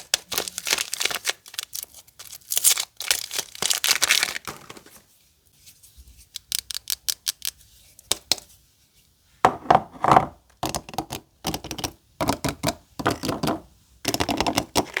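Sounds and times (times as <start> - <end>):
packaging crinkling: 0.0 - 5.1.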